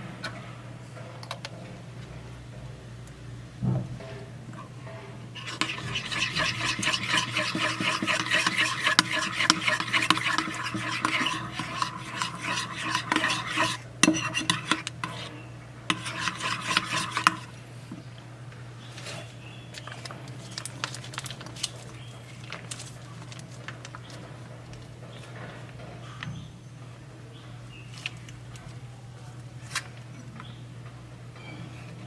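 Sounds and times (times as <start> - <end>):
utensil scraping a bowl: 5.4 - 18.1.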